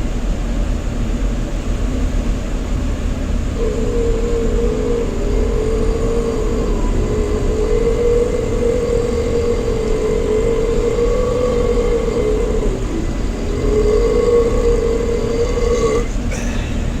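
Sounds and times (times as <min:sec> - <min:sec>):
steady low rumble: 0:00.0 - 0:17.0
long drawn-out burps: 0:13.2 - 0:17.0.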